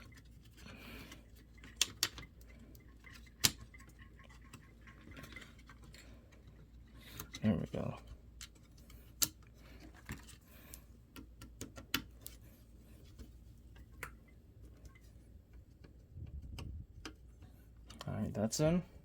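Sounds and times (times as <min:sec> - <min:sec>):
laptop parts clicking: 0:00.0 - 0:12.4.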